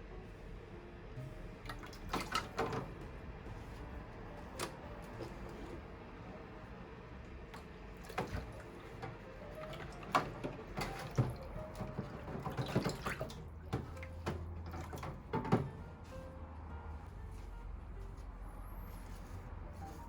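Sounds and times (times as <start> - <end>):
running water: 1.6 - 6.4, 7.1 - 15.7.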